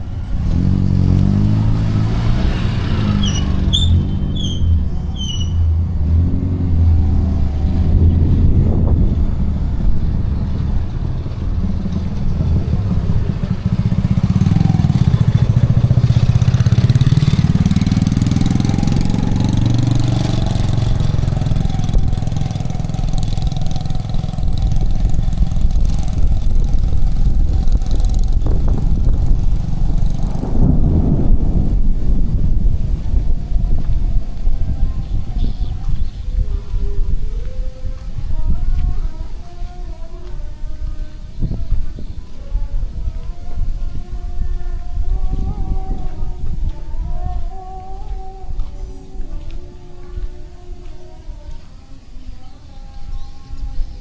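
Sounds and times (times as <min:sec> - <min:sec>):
vehicle engine revving: 0:00.0 - 0:37.2
short high chirps: 0:03.2 - 0:05.8.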